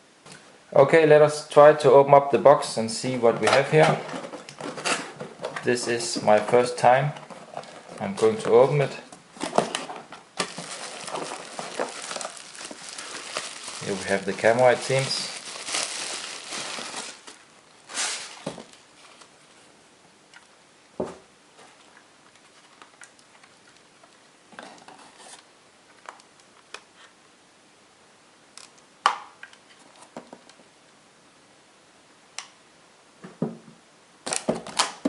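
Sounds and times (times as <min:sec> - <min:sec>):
packaging rustling: 0:07.2 - 0:19.4.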